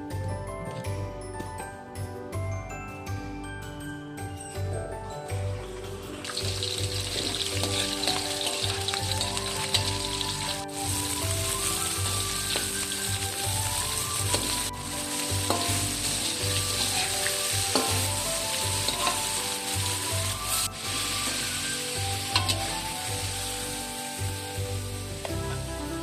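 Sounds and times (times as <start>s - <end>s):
background music with low beat: 0.0s - 26.0s
fish sizzling in oil: 5.8s - 25.7s
crackles and clicks from pan: 6.2s - 23.0s.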